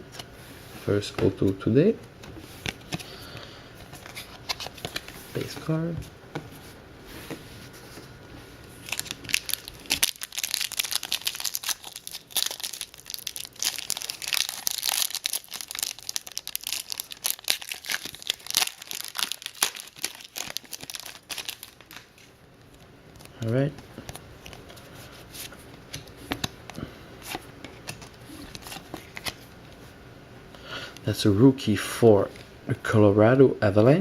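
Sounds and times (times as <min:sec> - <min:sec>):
wrapper tearing and crinkling: 0:08.8 - 0:22.3.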